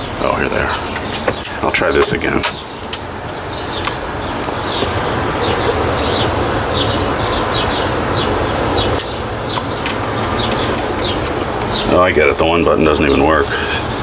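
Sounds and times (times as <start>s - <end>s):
city street traffic: 0.0s - 14.0s
small bird chirping: 1.2s - 12.0s.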